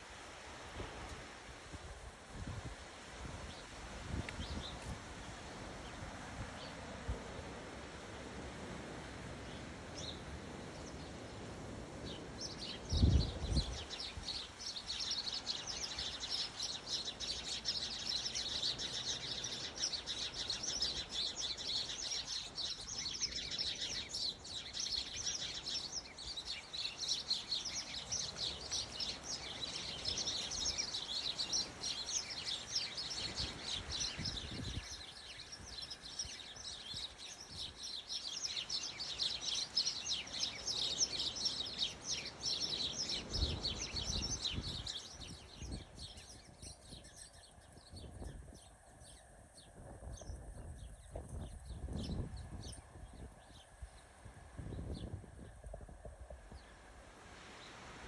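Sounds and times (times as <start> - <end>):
small birds chirping: 2.5 - 8.3, 9.2 - 58.0.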